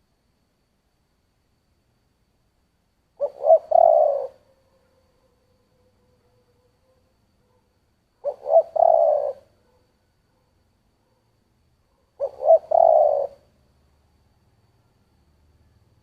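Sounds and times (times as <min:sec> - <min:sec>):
dove cooing: 0:03.2 - 0:06.6, 0:08.2 - 0:09.8, 0:12.0 - 0:13.5.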